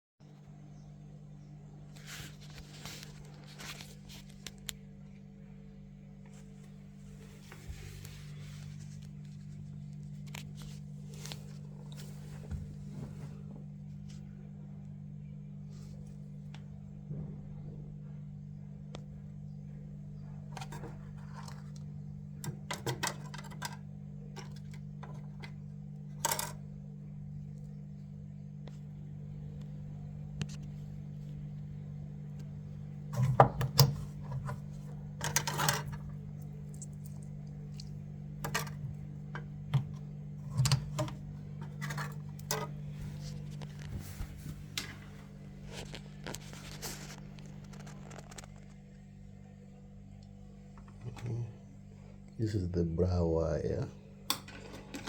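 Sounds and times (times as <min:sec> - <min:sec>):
steady low hum: 0:00.2 - 0:55.0
tools and metal parts clinking: 0:26.2 - 0:26.6, 0:35.2 - 0:36.1.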